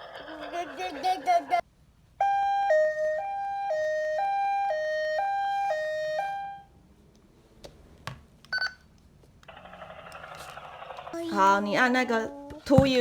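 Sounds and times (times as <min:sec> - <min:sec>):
two-tone siren from small speaker: 0:02.2 - 0:06.7.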